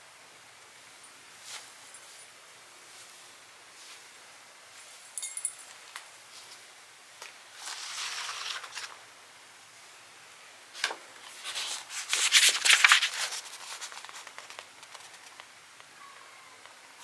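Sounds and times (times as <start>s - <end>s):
soft hiss: 0.0s - 16.0s
rustling and crinkling handling noise: 1.0s - 9.1s, 10.7s - 15.6s.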